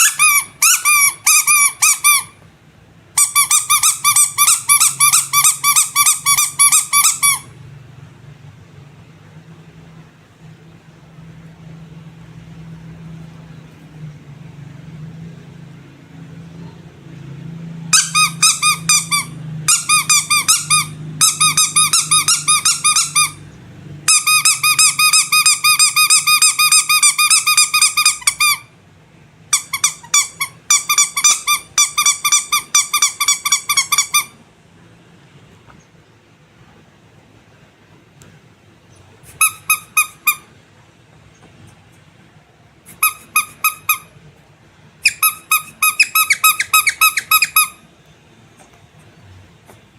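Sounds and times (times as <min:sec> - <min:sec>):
squeaky rubber toy squeaking: 0:00.0 - 0:02.4, 0:03.2 - 0:07.6, 0:17.9 - 0:23.5, 0:24.1 - 0:28.7, 0:29.5 - 0:34.4, 0:39.2 - 0:40.5, 0:42.9 - 0:44.2, 0:45.0 - 0:47.8.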